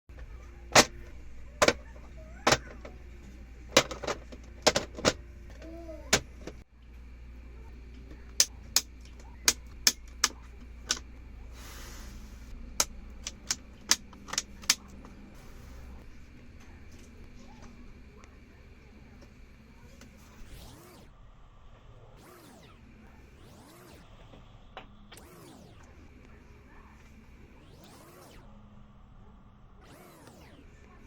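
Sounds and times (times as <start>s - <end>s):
plastic keycap clicks: 12.8s - 14.9s.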